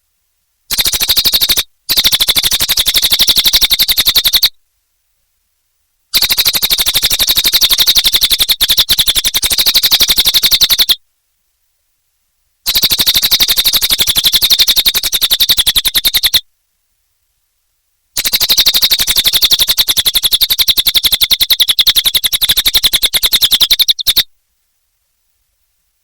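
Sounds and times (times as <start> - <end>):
songbird singing high trill: 6.2 - 11.0, 12.7 - 16.4, 18.2 - 24.3.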